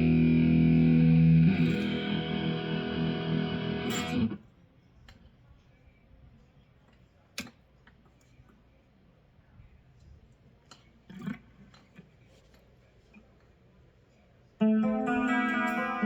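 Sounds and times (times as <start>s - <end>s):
electric guitar chord ringing: 0.0s - 4.4s, 14.6s - 16.0s.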